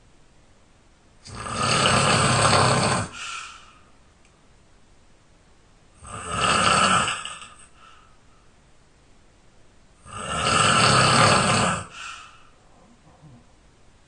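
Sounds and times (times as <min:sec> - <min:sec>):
person snoring loudly: 0:01.2 - 0:03.3, 0:06.0 - 0:07.6, 0:10.0 - 0:12.4.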